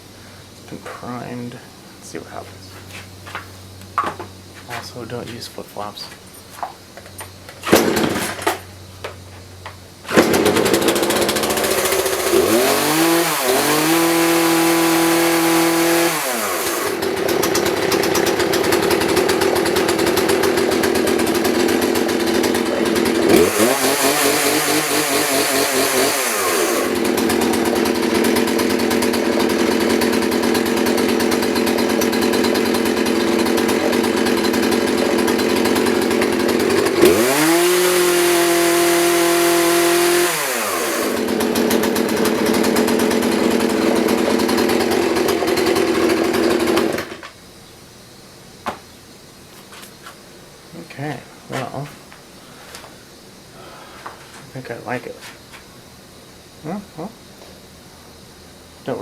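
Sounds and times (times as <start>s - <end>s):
chainsaw starting and running: 7.2s - 9.2s, 10.0s - 47.4s
chainsaw revving: 7.6s - 8.8s, 10.0s - 47.3s.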